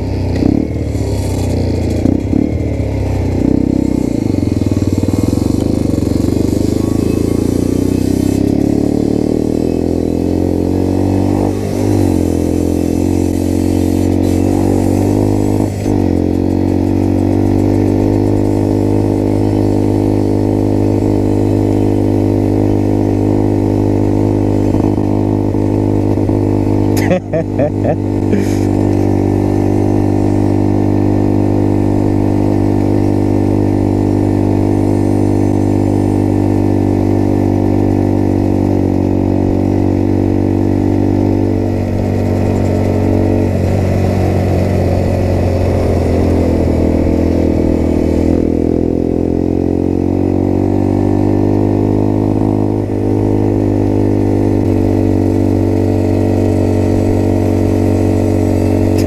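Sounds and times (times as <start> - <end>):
small motorcycle engine running: 0.0 - 59.0.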